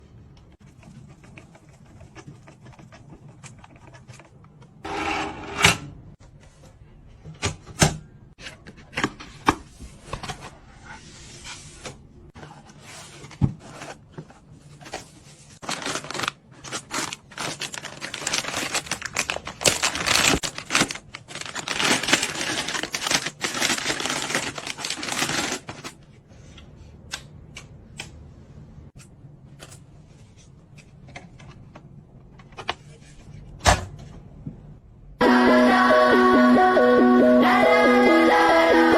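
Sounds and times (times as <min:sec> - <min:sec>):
rustling and scraping: 0:08.4 - 0:26.8.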